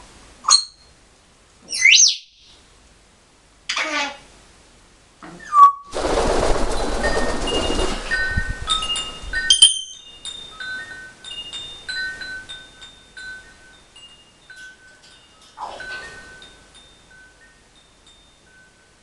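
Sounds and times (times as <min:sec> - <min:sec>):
wind chimes tinkling: 0:06.7 - 0:19.0.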